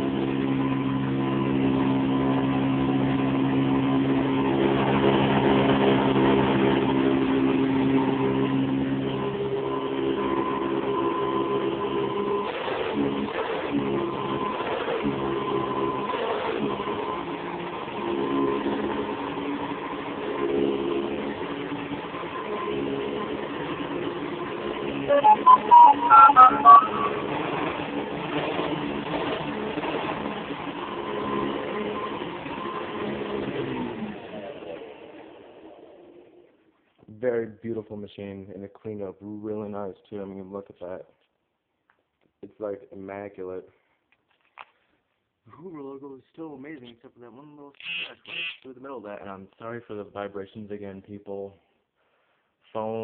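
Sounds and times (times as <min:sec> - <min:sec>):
upright vacuum cleaner running: 0:00.0 - 0:25.0, 0:27.1 - 0:35.8
loud beeping notes: 0:25.1 - 0:27.7.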